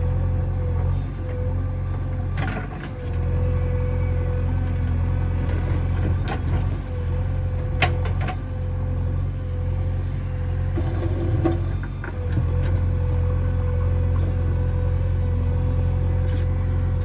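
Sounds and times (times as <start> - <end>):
diesel engine running: 0.0 - 17.0.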